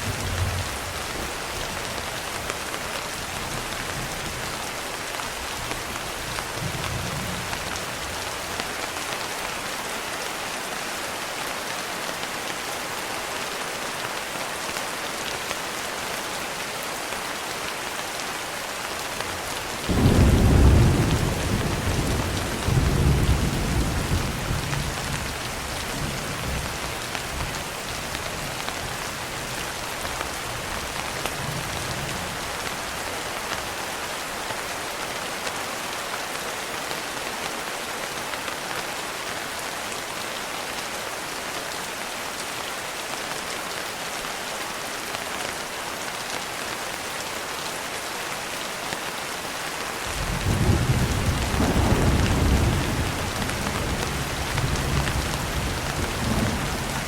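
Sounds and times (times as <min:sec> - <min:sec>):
low rumble of thunder: 0:00.0 - 0:01.4, 0:19.9 - 0:26.8, 0:50.2 - 0:57.0
steady rain: 0:00.0 - 0:57.0.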